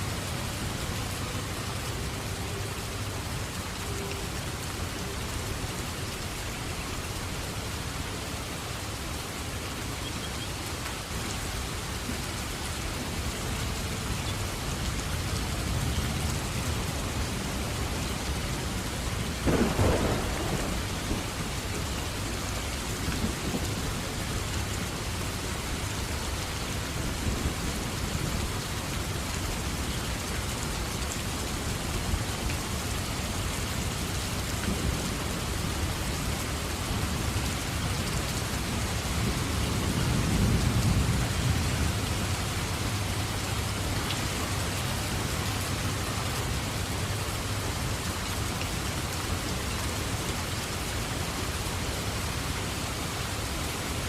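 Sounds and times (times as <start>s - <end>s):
steady rain falling: 0.0s - 54.0s
low roll of thunder: 19.4s - 21.9s.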